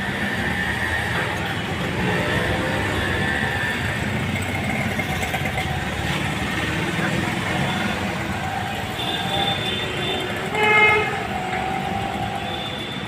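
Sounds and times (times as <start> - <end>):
motor vehicles running: 0.0 - 13.0.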